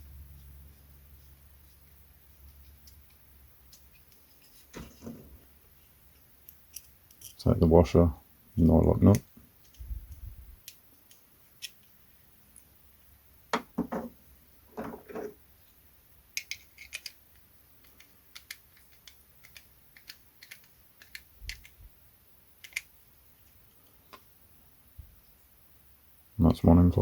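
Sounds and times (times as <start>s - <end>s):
knocks: 13.6s - 14.2s.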